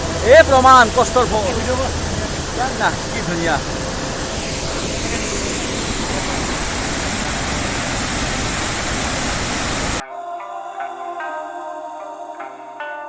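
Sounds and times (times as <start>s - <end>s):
waterfall roaring: 0.0s - 10.0s.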